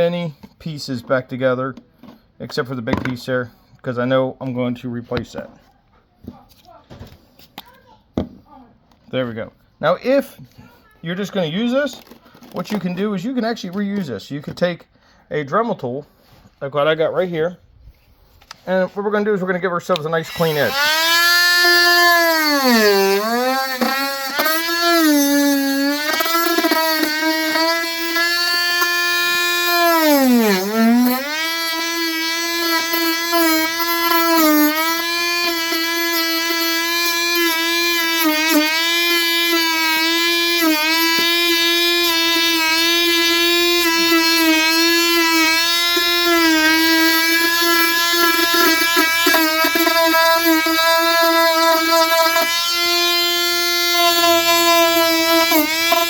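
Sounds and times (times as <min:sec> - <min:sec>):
rotary tool whining: 0:20.2 - 0:56.0.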